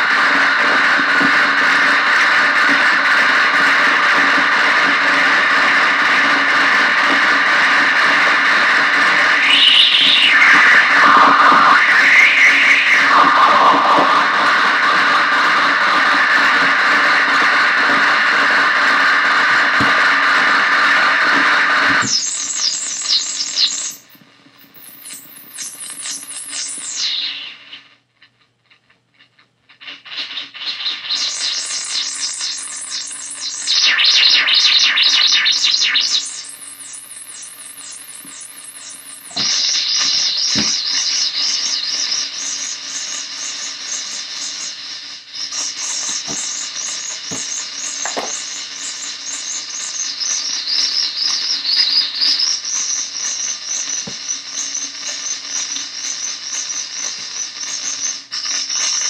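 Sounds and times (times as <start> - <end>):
harsh analog synth drone: 0.0 - 22.4.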